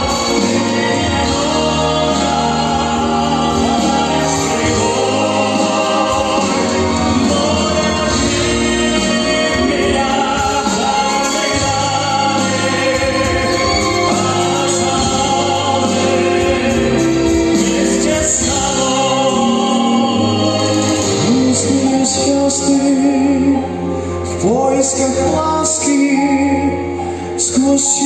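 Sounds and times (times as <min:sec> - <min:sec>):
instrumental backing music: 0:00.0 - 0:28.0
voices singing in harmony: 0:00.0 - 0:28.0.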